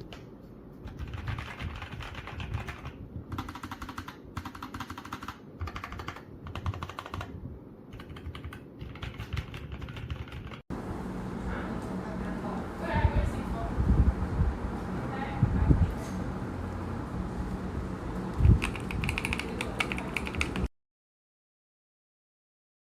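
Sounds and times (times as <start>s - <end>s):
mechanical keyboard typing: 0.0s - 10.6s, 18.3s - 20.7s.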